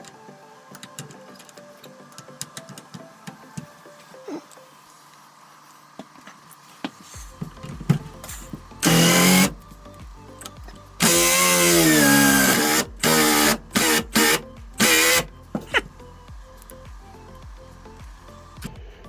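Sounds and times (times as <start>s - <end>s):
power tool running in bursts: 8.8s - 9.6s, 11.0s - 15.3s.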